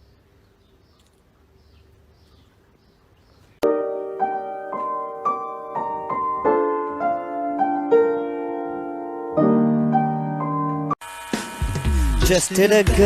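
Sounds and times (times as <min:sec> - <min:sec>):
gentle piano melody: 0:03.6 - 0:11.0.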